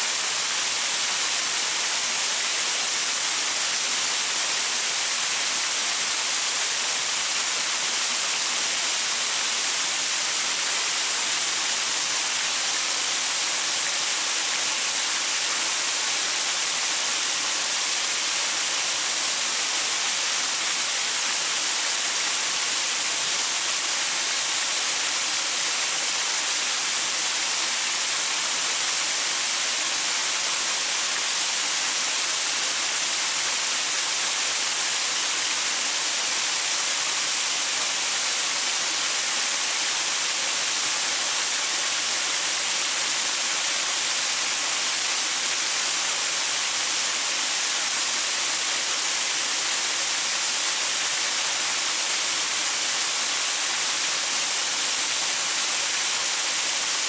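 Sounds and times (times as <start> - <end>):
waterfall splashing over rocks: 0.0 - 57.0.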